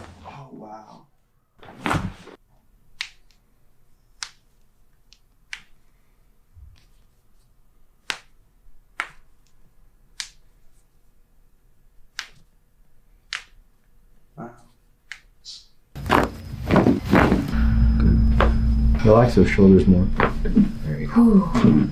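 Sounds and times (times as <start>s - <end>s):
sharp dry cracks of chiropractic adjustment: 3.0s - 3.5s, 4.1s - 5.8s, 8.0s - 10.5s, 12.0s - 12.6s, 13.2s - 13.8s.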